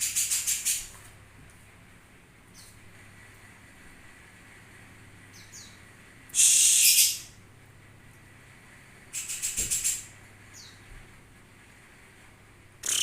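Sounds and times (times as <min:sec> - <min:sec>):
songbird calling: 0:06.4 - 0:07.3.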